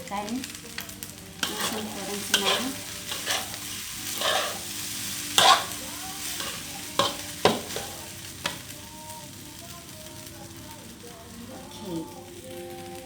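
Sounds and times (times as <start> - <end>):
low sizzle: 0.0 - 13.0
spatula stirring rice in wok: 0.4 - 11.1
spatula clanking against pan: 0.8 - 8.7.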